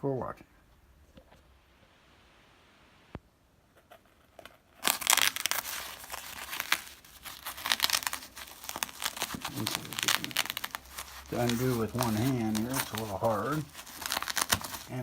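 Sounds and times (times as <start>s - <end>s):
velcro fastener ripping open: 4.7s - 15.0s.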